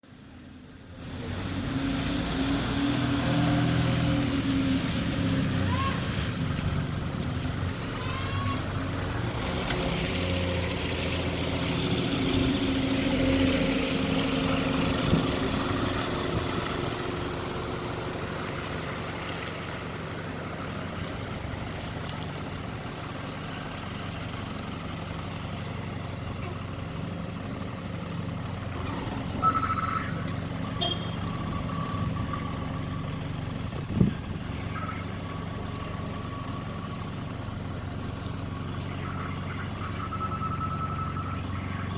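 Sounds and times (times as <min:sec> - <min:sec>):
bus engine running: 0:00.0 - 0:41.9
reversing warning signal: 0:29.3 - 0:33.0, 0:38.0 - 0:41.9.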